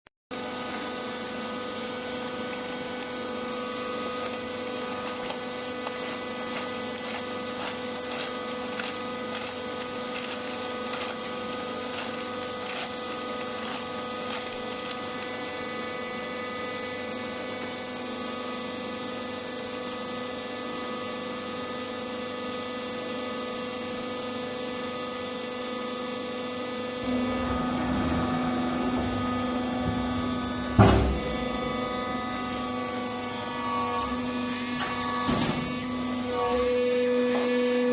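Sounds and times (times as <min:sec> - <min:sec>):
baling machine motor hum: 0:00.4 - 0:18.2, 0:27.0 - 0:37.5.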